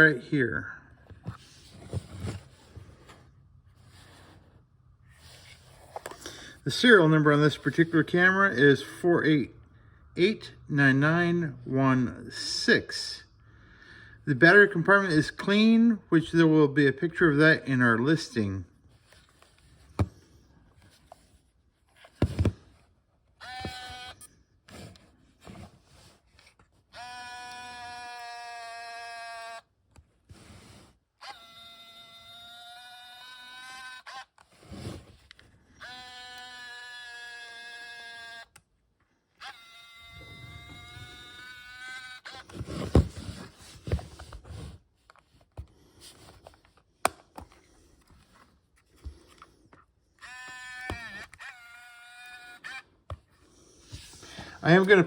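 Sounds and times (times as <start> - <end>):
camera body rustling and knocking: 1.1 - 3.4, 19.0 - 22.9, 42.3 - 49.4
camera zoom motor whirring: 23.4 - 24.2, 26.9 - 29.7, 31.2 - 34.5, 35.8 - 38.6, 39.4 - 42.6, 50.2 - 52.9.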